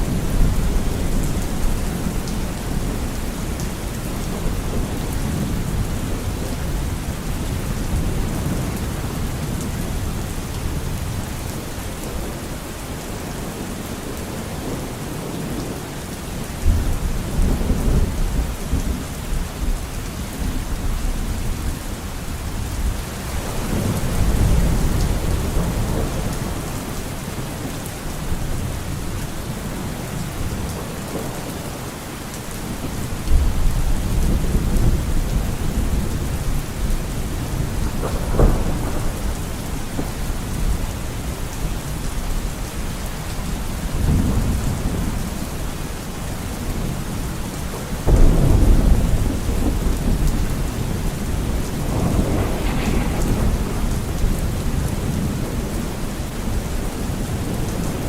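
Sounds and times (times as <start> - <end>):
steady rain: 0.0 - 58.0
thunder rumbling: 32.6 - 42.7, 48.0 - 58.0
sharp thunder crack: 48.1 - 55.8.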